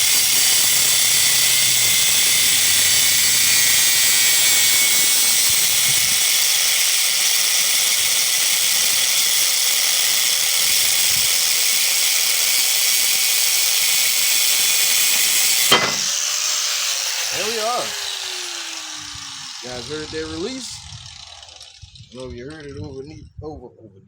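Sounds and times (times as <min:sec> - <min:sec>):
angle grinder cutting metal: 0:00.0 - 0:22.4
sharp metal pop: 0:15.7 - 0:16.2.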